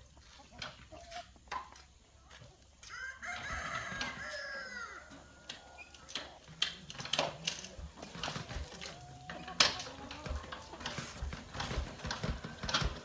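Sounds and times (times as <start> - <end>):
rooster crowing: 2.9 - 5.6.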